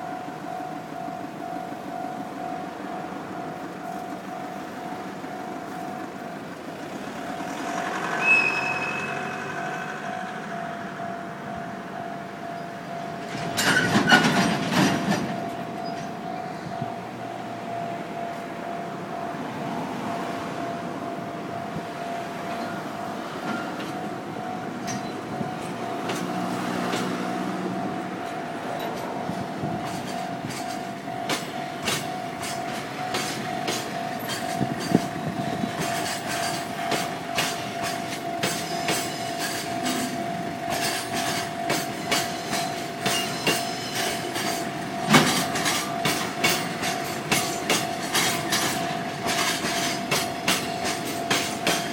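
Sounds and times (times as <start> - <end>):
steady high tone: 0.0 - 13.9, 14.9 - 51.9
train wheels clacking on rail joints: 12.5 - 16.9, 22.4 - 51.9.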